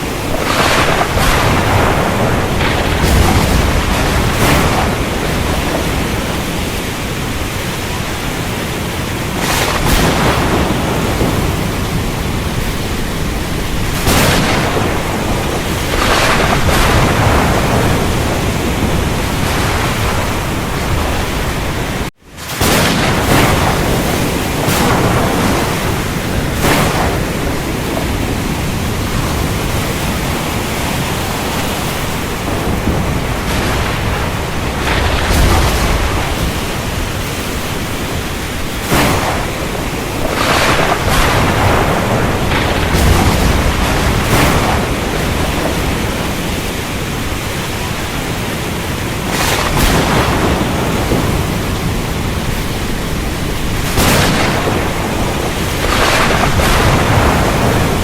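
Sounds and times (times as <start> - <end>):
heavy rain: 0.0 - 58.0
rolling thunder: 0.0 - 58.0.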